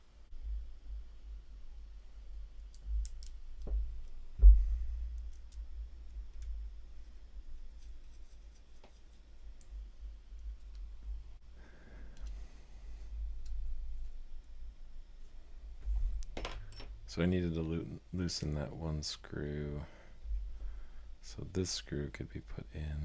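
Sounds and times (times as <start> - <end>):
light clicks and taps of tools: 12.1 - 12.4.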